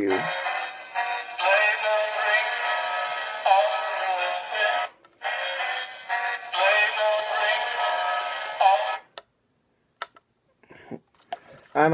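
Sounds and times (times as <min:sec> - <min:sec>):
tinny synthesized song with singing: 0:00.0 - 0:09.2.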